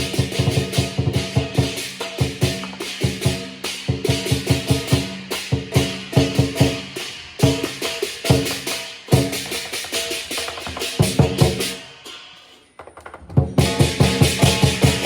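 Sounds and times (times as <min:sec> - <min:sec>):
large drum beaten fast: 0:00.0 - 0:11.9, 0:13.4 - 0:15.0
cymbals clashing: 0:00.0 - 0:12.8, 0:13.6 - 0:15.0.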